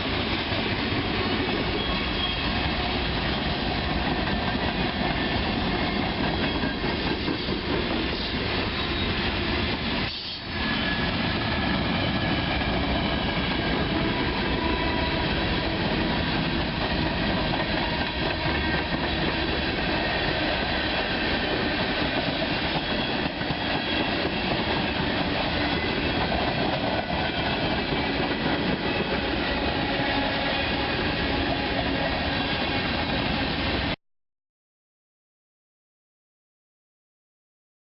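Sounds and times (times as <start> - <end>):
train wheels clattering on rails: 0.0 - 33.4
high wheel squeal: 1.6 - 3.5.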